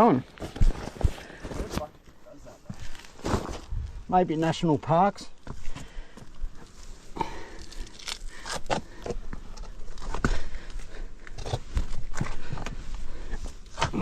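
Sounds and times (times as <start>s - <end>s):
footsteps scuffing on rock: 5.4s - 6.8s.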